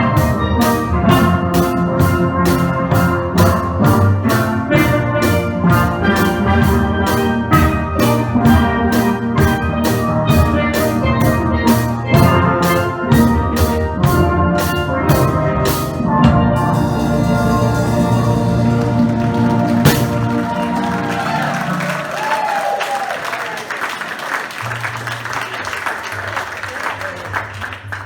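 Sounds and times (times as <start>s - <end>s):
sharp percussion strokes: 0.0s - 22.2s
steel pan band playing: 0.0s - 25.4s.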